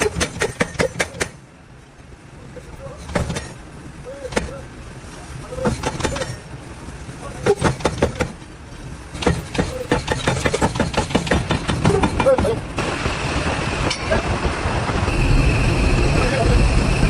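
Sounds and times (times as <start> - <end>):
sharp knocks: 0.0 - 1.4, 5.6 - 6.4, 7.4 - 8.4, 9.2 - 12.6
low rumble: 12.6 - 17.0.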